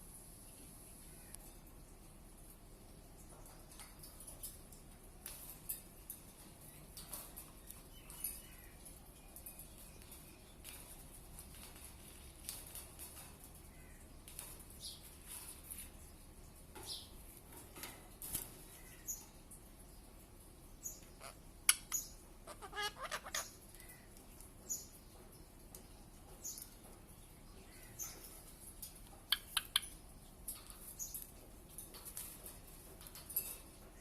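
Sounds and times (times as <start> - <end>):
parrot chirping and squeaking: 20.9 - 23.6
harsh parrot calls: 22.4 - 23.6.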